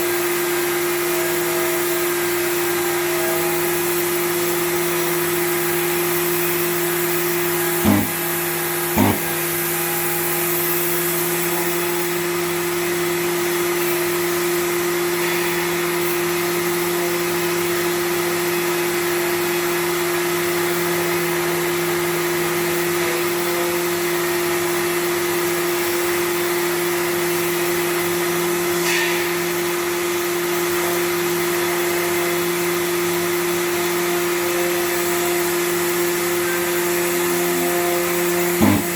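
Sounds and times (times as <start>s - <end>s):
power sander running: 7.8s - 9.6s, 38.6s - 38.9s
short knocks: 7.9s - 8.2s, 9.0s - 9.3s, 38.6s - 38.9s.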